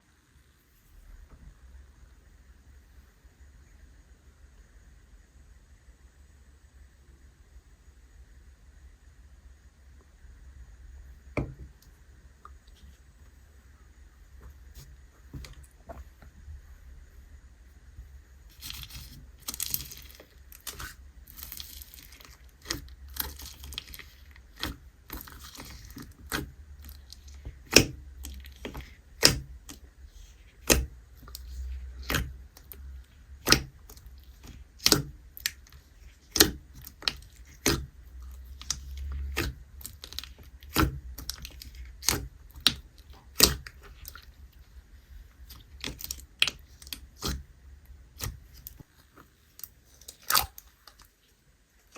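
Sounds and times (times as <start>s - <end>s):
foam slime crackling and popping: 18.5s - 44.4s, 49.6s - 51.1s.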